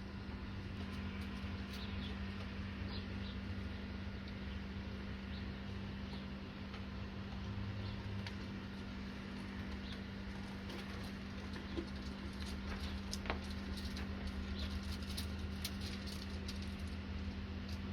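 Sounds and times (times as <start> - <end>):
steady low hum: 0.0 - 17.9
pigeons tapping and scratching: 6.7 - 17.9.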